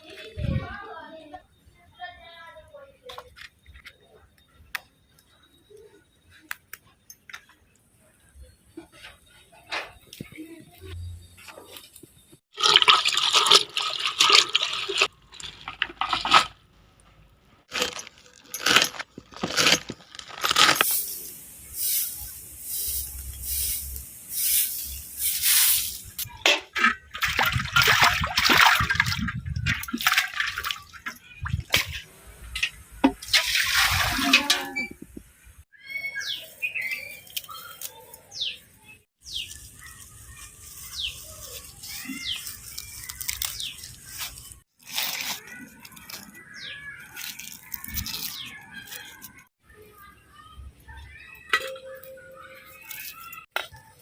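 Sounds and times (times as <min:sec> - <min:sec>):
water splashing and pouring: 0:12.5 - 0:16.6, 0:26.8 - 0:32.1, 0:33.0 - 0:34.6
small birds chirping: 0:35.7 - 0:44.6, 0:45.4 - 0:53.9.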